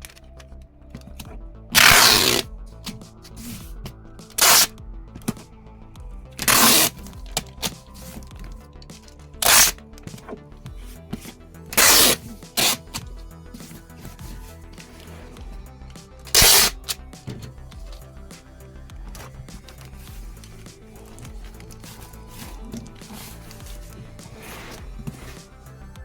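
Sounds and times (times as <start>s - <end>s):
quiet background music: 0.0s - 26.0s.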